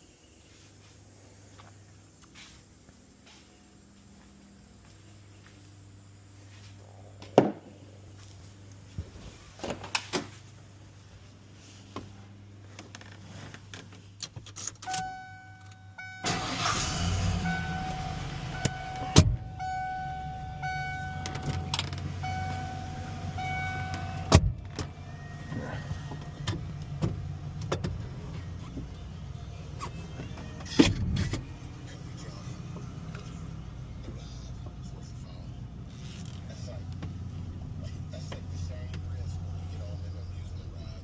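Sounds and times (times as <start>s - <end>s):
electronic tone switching on and off: 14.8s - 24.4s
truck engine running: 15.6s - 41.0s.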